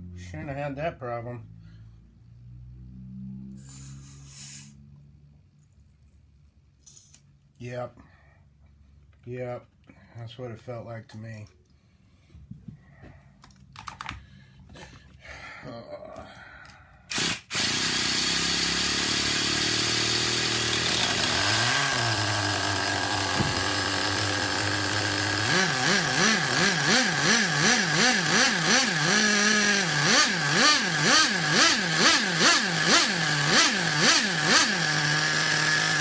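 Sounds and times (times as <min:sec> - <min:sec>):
small nitro engine revving: 0:02.7 - 0:05.0, 0:17.1 - 0:36.0.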